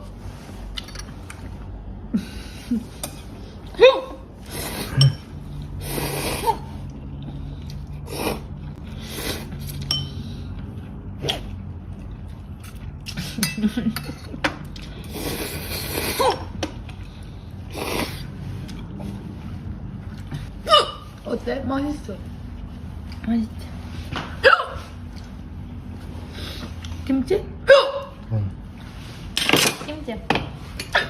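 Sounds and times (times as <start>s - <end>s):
noisy slurping: 4.4s - 9.8s, 14.8s - 19.4s.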